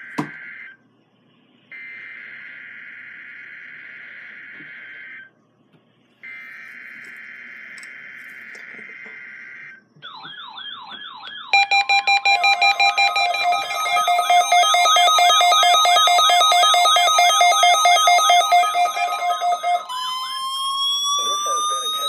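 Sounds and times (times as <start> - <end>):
fast-pulsing beep alarm: 11.4 - 22.0
warbling alert tone: 11.6 - 22.0.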